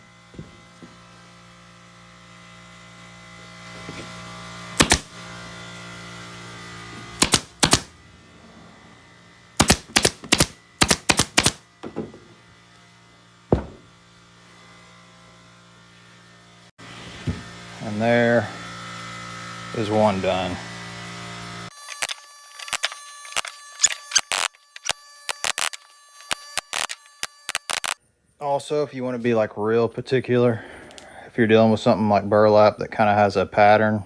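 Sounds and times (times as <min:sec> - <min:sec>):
staple gun shots: 0:04.8 - 0:05.1, 0:07.2 - 0:07.9, 0:09.6 - 0:11.6.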